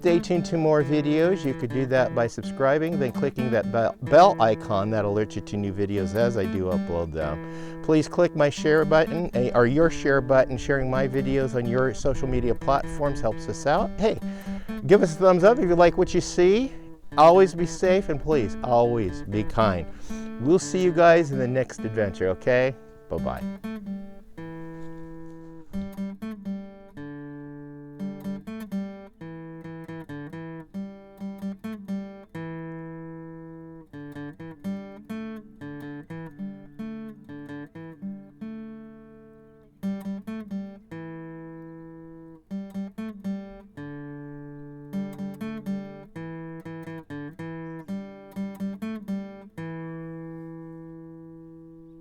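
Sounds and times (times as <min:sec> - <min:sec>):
acoustic guitar picking and strumming: 0:00.0 - 0:52.0.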